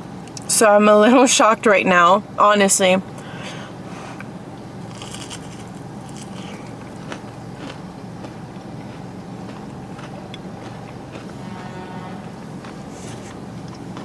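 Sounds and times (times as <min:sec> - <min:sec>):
low background hum: 0:00.0 - 0:14.0
person chewing food: 0:04.0 - 0:14.0.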